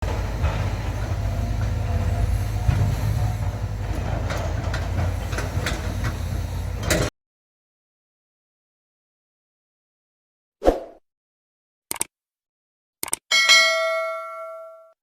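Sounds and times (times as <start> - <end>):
diesel engine rumbling: 0.0 - 7.1.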